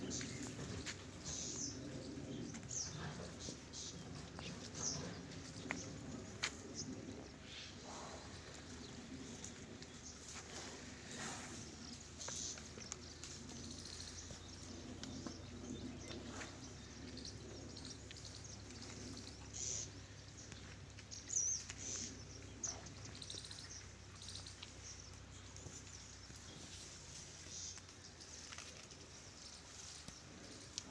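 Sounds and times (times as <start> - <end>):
faint low hum: 0.0 - 30.9
small birds chirping: 0.0 - 30.9.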